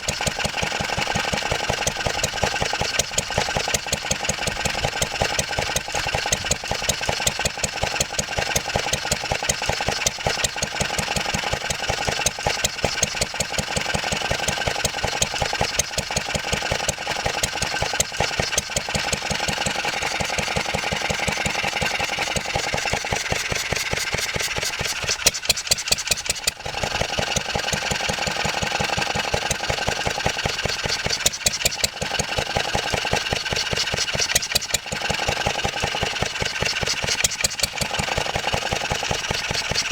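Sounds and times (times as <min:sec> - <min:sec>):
stationary engine running: 0:00.0 - 0:39.9.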